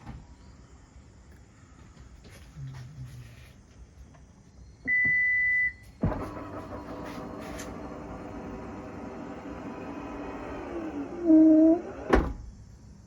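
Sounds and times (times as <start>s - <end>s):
electric motor humming: 7.2s - 12.2s.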